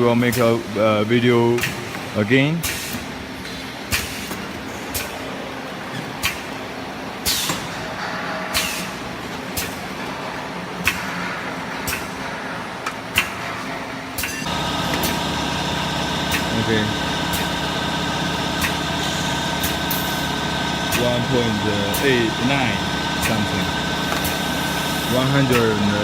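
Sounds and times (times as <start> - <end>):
multi-tone hum: 0.0 - 26.0
filling machine clacking: 14.3 - 26.0.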